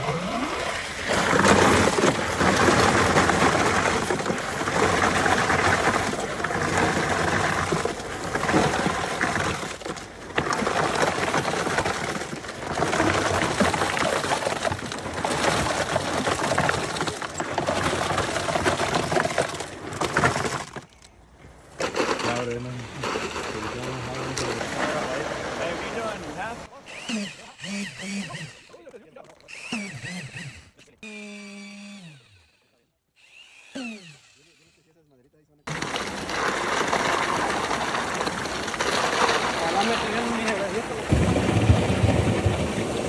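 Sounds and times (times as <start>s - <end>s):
wet concrete pouring from hose: 0.1s - 20.6s, 21.8s - 27.3s, 35.7s - 43.0s.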